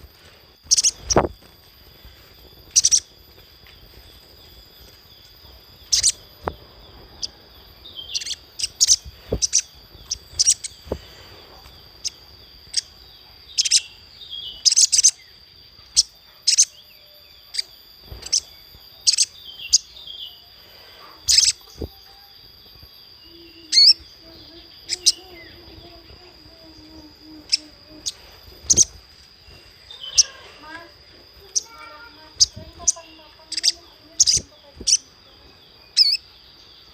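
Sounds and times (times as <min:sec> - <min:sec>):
high insect-like whine: 0:00.0 - 0:36.9.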